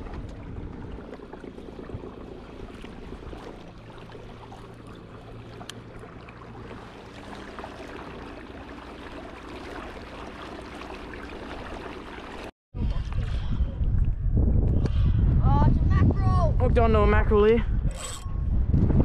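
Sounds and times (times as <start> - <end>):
water lapping against kayak hull: 0.0 - 14.1.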